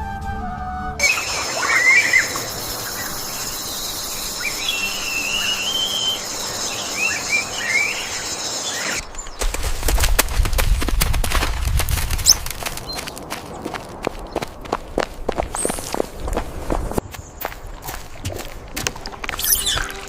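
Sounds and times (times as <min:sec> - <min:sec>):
flute: 0:00.0 - 0:02.4
high insect drone: 0:01.0 - 0:09.1
chirping squeaky calls: 0:01.0 - 0:09.4, 0:19.3 - 0:20.0.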